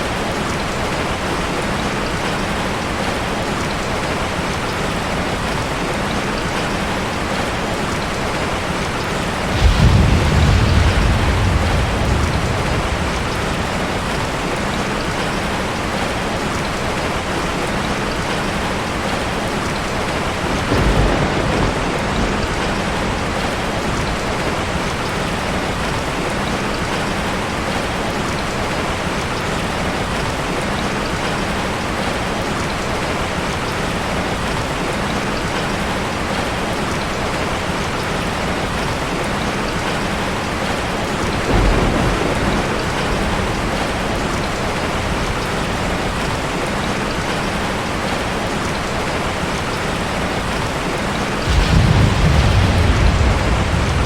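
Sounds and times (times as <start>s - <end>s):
steady rain falling: 0.0s - 54.0s
low rumble of thunder: 6.6s - 16.8s, 19.1s - 28.0s, 39.9s - 49.1s, 51.2s - 54.0s.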